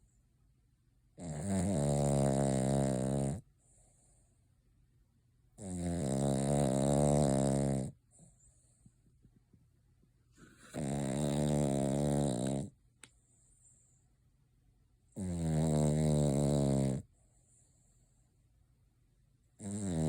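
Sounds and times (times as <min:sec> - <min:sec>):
dog snoring: 0:01.2 - 0:04.2, 0:05.6 - 0:08.3, 0:10.4 - 0:12.8, 0:15.1 - 0:17.9, 0:19.6 - 0:20.0.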